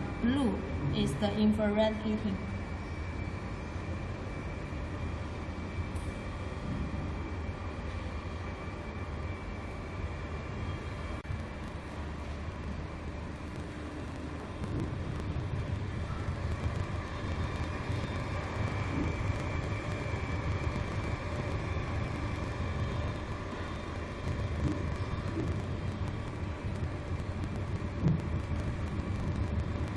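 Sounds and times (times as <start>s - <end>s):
hot-air heaters and fans blowing: 0.0s - 29.9s.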